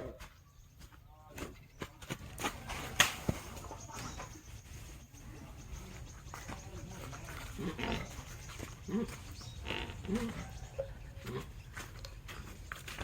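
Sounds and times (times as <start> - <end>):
pig calling: 7.4 - 11.6.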